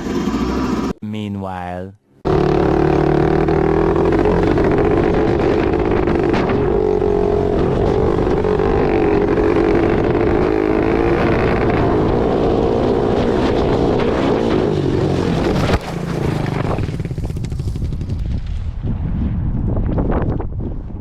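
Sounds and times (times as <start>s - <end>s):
low rumble: 2.3s - 14.2s
dirt bike engine running: 2.3s - 18.6s
wind buffeting microphone: 2.3s - 21.0s.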